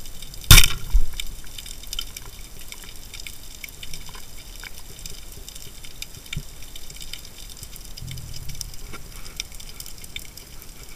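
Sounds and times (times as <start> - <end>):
underwater crackling clicks: 0.1 - 10.9
low rumble: 8.0 - 9.7.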